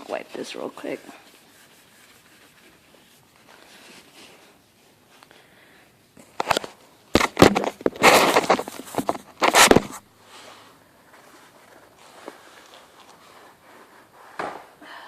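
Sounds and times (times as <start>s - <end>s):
paper towel scrubbing headlight: 0.0s - 5.0s.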